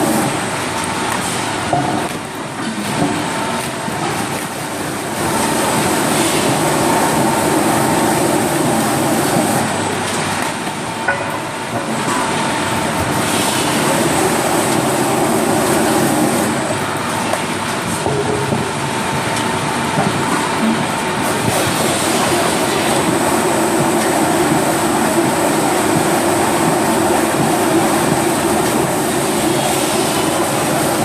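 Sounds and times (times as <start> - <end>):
lathe machine running: 4.6 - 10.1, 12.5 - 17.7, 18.8 - 31.0.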